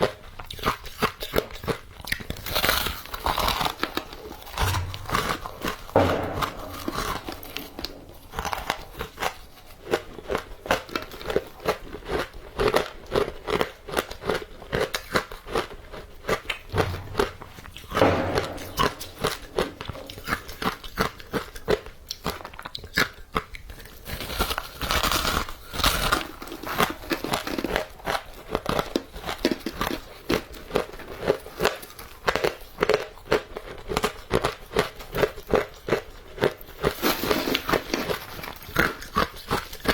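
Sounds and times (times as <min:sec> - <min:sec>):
hard bites: 0:16.7 - 0:20.8.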